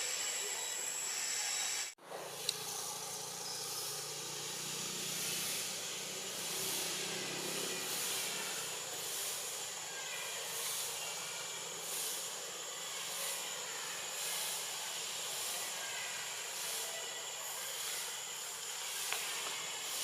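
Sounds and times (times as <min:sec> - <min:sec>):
hissing outdoor background noise: 0:00.0 - 0:20.0.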